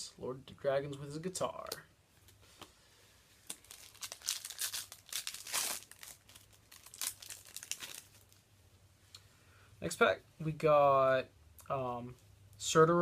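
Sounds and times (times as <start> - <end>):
foil wrapper crinkling and tearing: 3.5 - 8.4.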